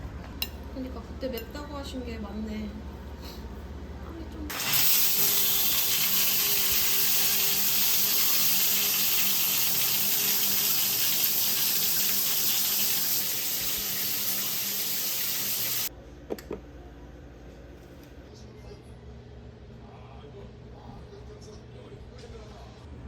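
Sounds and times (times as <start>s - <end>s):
water running from a tap: 4.5s - 15.9s.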